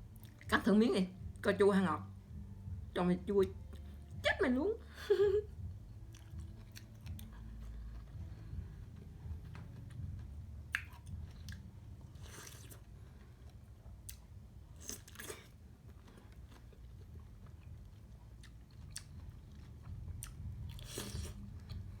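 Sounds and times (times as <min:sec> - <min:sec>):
low steady hum: 0:00.0 - 0:22.0
wet chewing clicks: 0:06.1 - 0:08.3, 0:10.7 - 0:12.8, 0:14.0 - 0:21.9
crunchy bites of pineapple: 0:14.1 - 0:15.6, 0:20.2 - 0:21.5.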